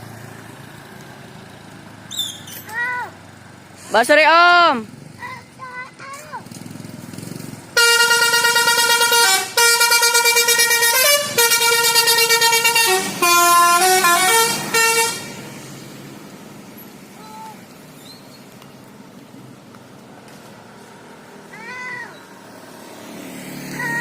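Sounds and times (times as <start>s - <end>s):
bus musical horn melody: 7.8s - 15.6s.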